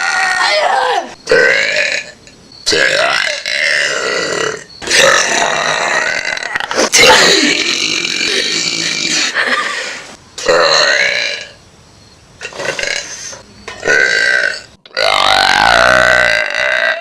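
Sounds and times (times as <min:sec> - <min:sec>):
person burping loudly: 0:01.3 - 0:09.4, 0:10.4 - 0:11.6, 0:12.4 - 0:13.2, 0:13.8 - 0:17.0.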